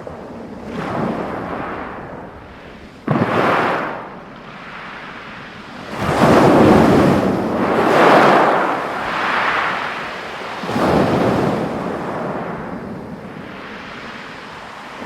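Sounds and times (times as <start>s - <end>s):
waves breaking on pebbles: 3.0s - 12.8s.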